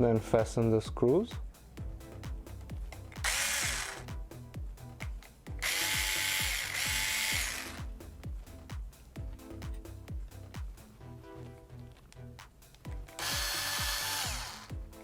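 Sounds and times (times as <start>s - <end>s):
background music with steady beat: 0.0s - 15.0s
electric screwdriver whirring: 3.2s - 4.1s, 5.6s - 7.9s, 13.1s - 14.8s.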